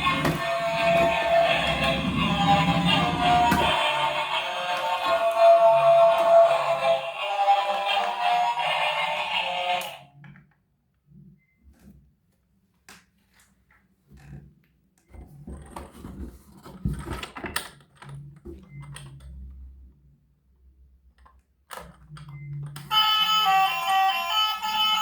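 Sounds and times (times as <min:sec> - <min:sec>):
music: 0:00.0 - 0:10.0, 0:22.9 - 0:25.0.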